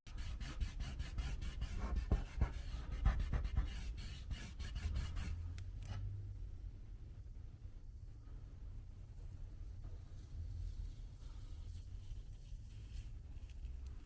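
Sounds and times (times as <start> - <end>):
sticker peeling and rubbing rustles: 10.2 - 14.0.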